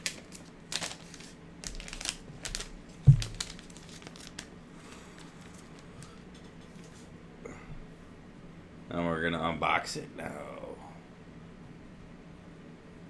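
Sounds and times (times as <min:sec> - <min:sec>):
paper strips tearing: 0:00.0 - 0:05.8
dull thump: 0:03.0 - 0:03.5.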